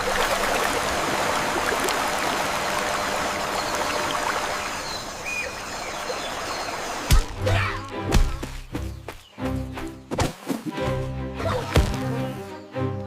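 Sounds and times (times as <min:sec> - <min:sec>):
stream flowing: 0:00.0 - 0:08.7.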